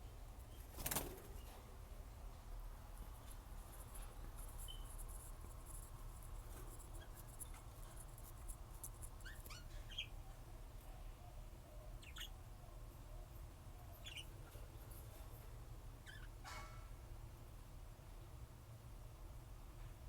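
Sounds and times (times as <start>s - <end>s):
lovebirds chirping: 4.6s - 5.0s, 9.0s - 10.3s, 11.9s - 12.4s, 13.9s - 14.7s, 16.0s - 16.5s.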